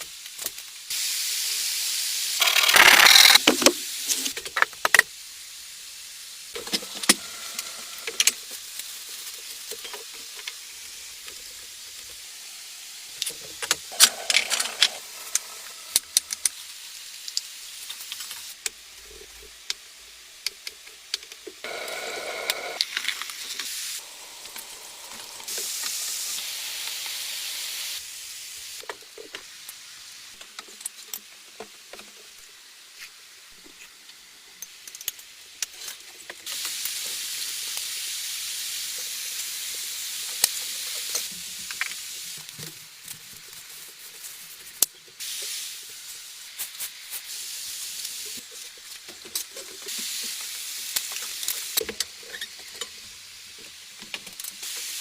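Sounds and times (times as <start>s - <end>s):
sizzling hiss: 0.0s - 55.0s
clicks and crackles: 2.4s - 5.1s, 13.2s - 19.8s, 22.5s - 23.7s, 33.0s - 36.7s.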